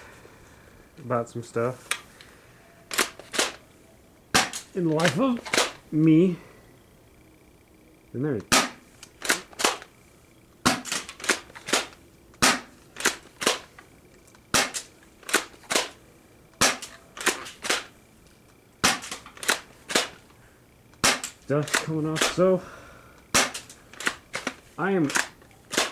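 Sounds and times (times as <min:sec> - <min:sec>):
shotgun pump racking: 0:02.9 - 0:03.6, 0:04.4 - 0:05.8, 0:08.5 - 0:09.9, 0:10.7 - 0:13.7, 0:14.6 - 0:16.0, 0:16.7 - 0:17.9, 0:18.8 - 0:20.2, 0:21.0 - 0:22.4, 0:23.2 - 0:25.9
airsoft shotgun shots: 0:04.3 - 0:04.7, 0:08.5 - 0:09.8, 0:10.6 - 0:13.6, 0:14.5 - 0:16.0, 0:16.6 - 0:17.9, 0:18.8 - 0:20.2, 0:21.0 - 0:22.4, 0:23.3 - 0:25.9.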